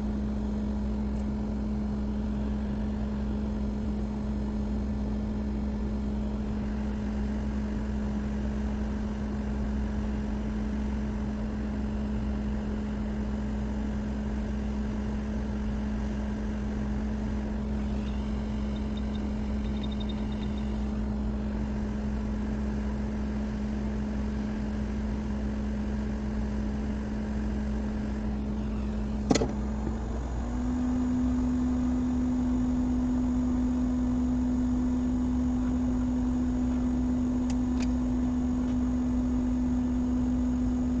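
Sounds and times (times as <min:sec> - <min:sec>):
blower motor humming: 0:00.0 - 0:41.0
faint high beeps: 0:17.8 - 0:20.8.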